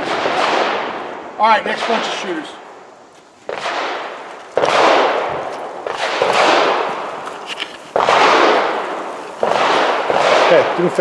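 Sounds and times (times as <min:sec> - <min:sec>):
faint sharp cracks: 0:03.2 - 0:10.8.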